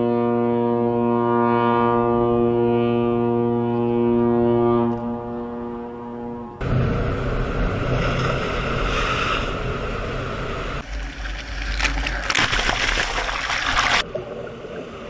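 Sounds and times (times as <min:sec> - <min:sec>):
ship's horn deep blast: 0:00.0 - 0:10.8.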